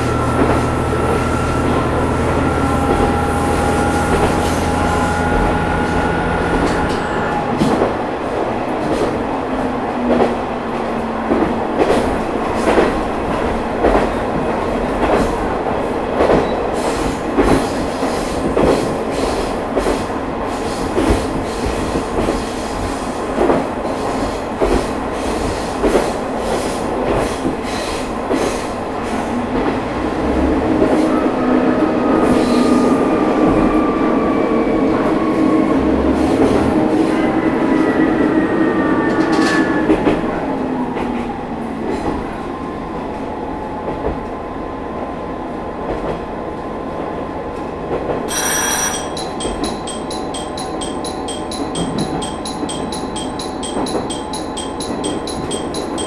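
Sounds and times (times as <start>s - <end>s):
wheels clacking on rail joints: 0.0s - 8.0s, 47.9s - 56.0s
railcar rumble: 0.0s - 56.0s.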